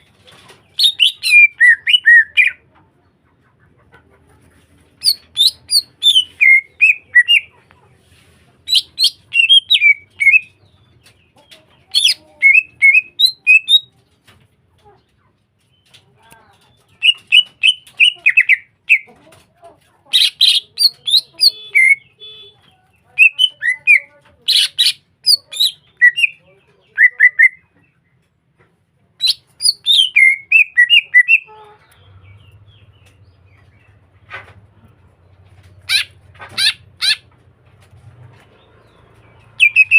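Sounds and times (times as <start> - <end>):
bird singing whistled chirps: 29.2 - 31.4, 39.6 - 39.9.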